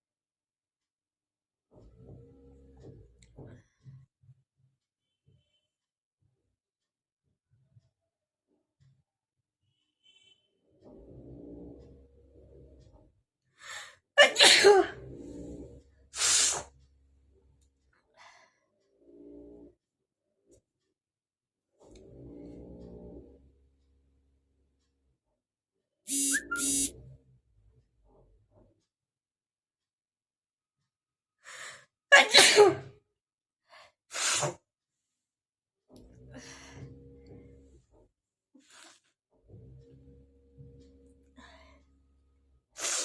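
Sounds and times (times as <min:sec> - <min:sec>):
person sneezing: 0:14.2 - 0:14.9, 0:32.2 - 0:32.9.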